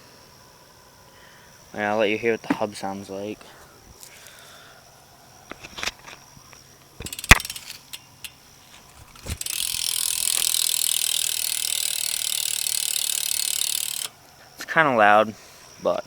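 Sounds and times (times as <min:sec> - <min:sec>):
bike hub ratchet buzz: 0:07.0 - 0:14.2.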